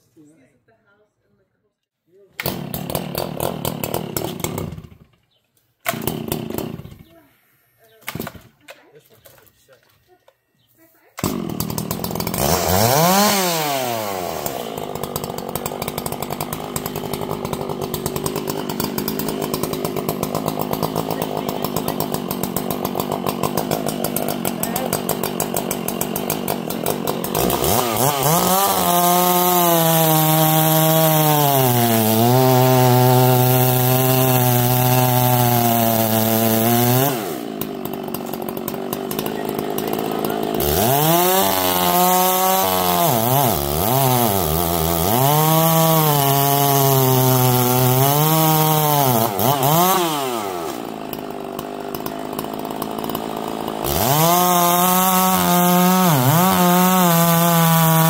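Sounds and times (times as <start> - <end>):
chainsaw revving and cutting wood: 2.4 - 5.2, 5.8 - 7.3, 11.2 - 58.0.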